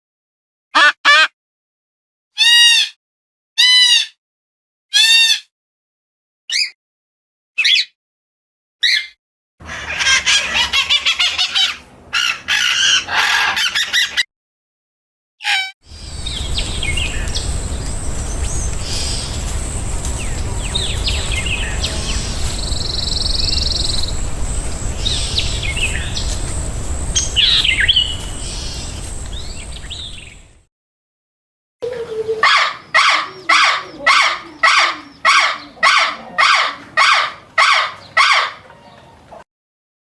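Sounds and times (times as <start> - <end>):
low outdoor rumble: 15.9 - 30.6
small birds chirping: 15.9 - 30.6.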